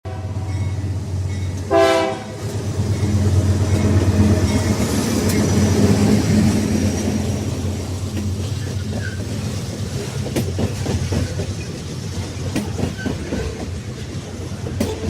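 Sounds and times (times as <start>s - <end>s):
railroad cars rumbling on rails: 0.0s - 15.0s
short loud horn blast: 1.7s - 2.4s.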